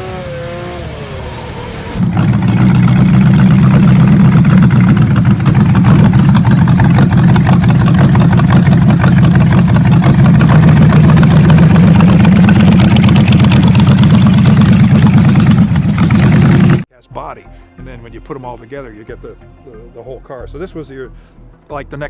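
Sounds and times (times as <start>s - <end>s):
hot rod engine idling: 2.0s - 16.8s.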